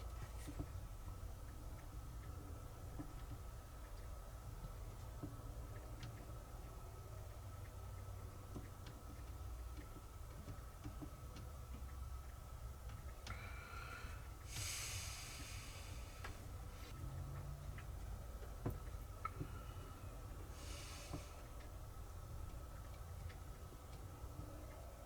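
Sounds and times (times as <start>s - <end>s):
faint steady hum: 0.0s - 25.0s
short hiss: 14.5s - 16.2s.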